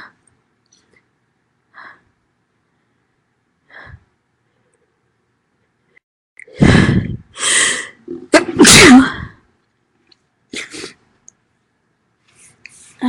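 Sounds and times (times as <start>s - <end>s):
woman sneezing: 8.4s - 9.4s.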